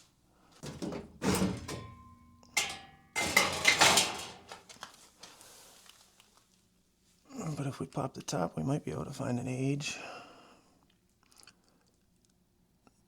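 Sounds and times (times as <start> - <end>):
metal ringing: 0.6 - 4.6
sheet metal clanks and scrapes: 0.6 - 4.8.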